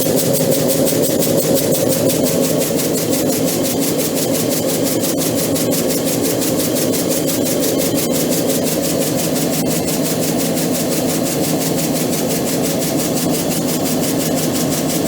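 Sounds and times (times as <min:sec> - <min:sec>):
piston air compressor running: 0:00.0 - 0:15.0.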